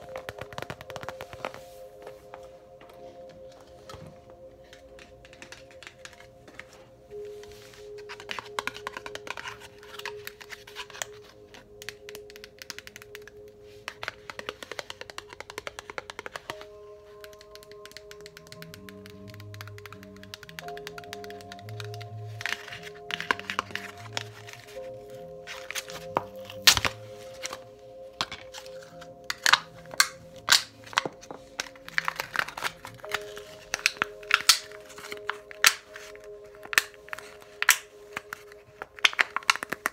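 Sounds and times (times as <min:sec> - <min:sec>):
soft background music: 0:00.0 - 0:39.9
fingernails tapping on small objects: 0:11.8 - 0:24.8.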